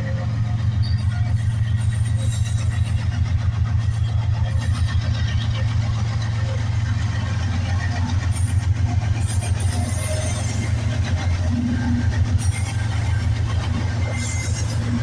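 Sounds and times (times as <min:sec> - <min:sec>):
train low rumble: 0:00.0 - 0:15.0
train wheels clattering on rails: 0:00.0 - 0:15.0.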